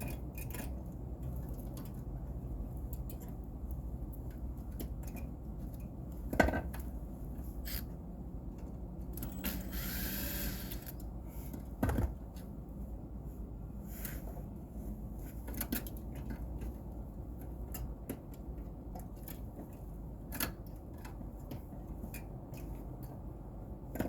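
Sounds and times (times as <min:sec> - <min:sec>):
hand tool clicks and knocks: 0:00.0 - 0:07.0.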